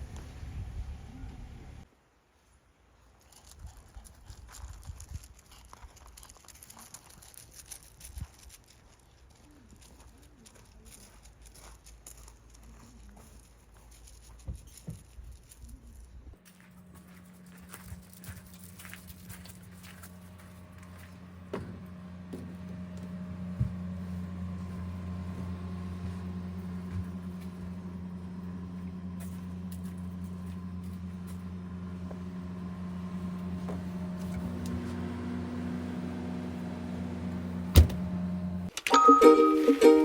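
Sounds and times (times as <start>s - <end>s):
faint high tone: 38.9s - 40.0s
music: 39.0s - 40.0s.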